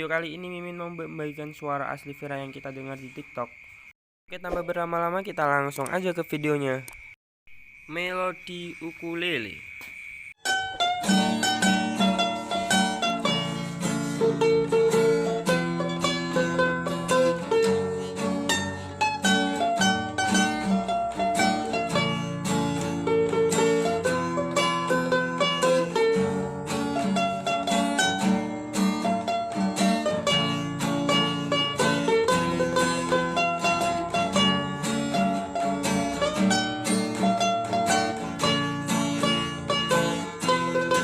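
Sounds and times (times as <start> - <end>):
ukulele melody: 10.4 - 41.0.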